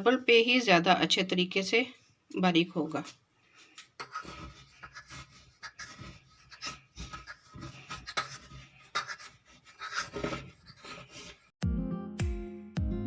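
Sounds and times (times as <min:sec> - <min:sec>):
grinding on marble slab: 0:04.0 - 0:11.5.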